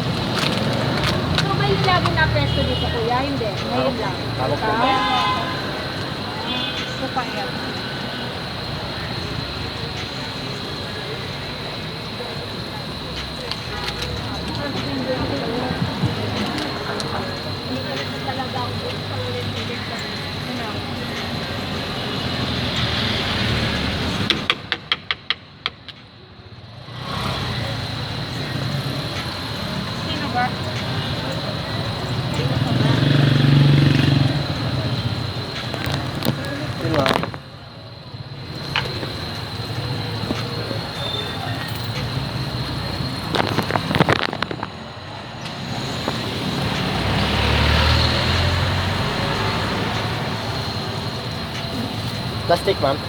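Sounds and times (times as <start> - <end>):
street traffic noise: 0.0 - 53.0
motor vehicle passing: 26.8 - 37.7, 38.4 - 53.0.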